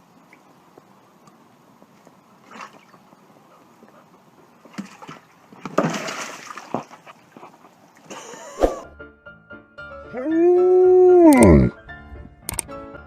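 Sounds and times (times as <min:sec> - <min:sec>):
water splashing and sloshing: 0:00.0 - 0:08.8.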